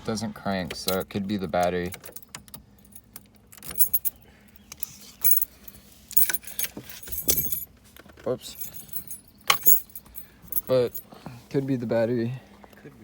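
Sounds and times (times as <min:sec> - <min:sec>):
metallic jangling and clinking: 0:00.9 - 0:01.1, 0:02.0 - 0:07.7, 0:08.4 - 0:11.1.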